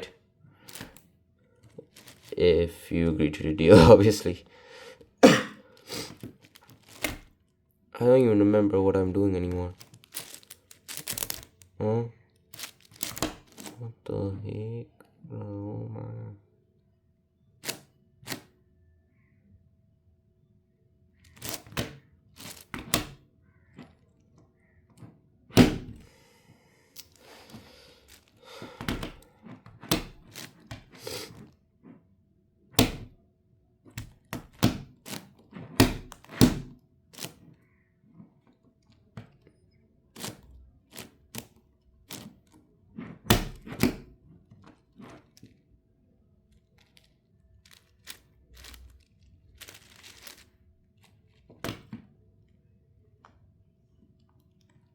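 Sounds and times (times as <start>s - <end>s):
soft handling rustle: 0.0s - 2.9s, 3.8s - 7.5s, 9.7s - 13.9s, 21.2s - 25.2s, 25.9s - 32.1s, 37.1s - 54.9s
loud plastic snaps: 0.6s - 1.1s, 5.8s - 7.4s, 9.8s - 11.7s, 12.5s - 13.8s, 17.6s - 18.6s, 21.3s - 23.2s, 25.5s - 26.1s, 27.0s - 31.4s, 32.8s - 33.2s, 33.9s - 37.5s, 40.2s - 42.6s, 43.3s - 44.1s.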